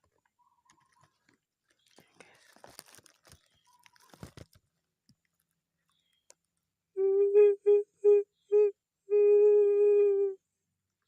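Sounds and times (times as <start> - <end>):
flute-like tone: 7.0 - 10.4.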